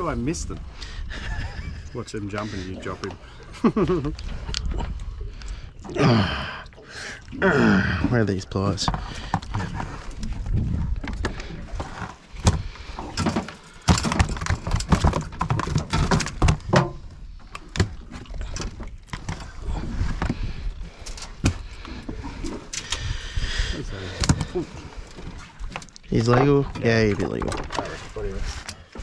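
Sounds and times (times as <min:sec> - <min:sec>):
fishing gear clattering in boat: 0:08.0 - 0:23.4, 0:24.0 - 0:29.0.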